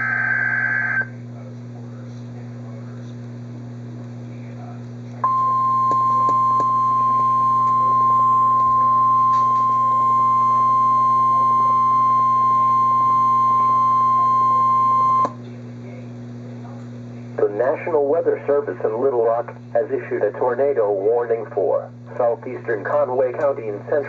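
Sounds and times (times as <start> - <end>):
low steady hum: 0.0 - 24.0
loud steady alarm beep: 5.2 - 15.4.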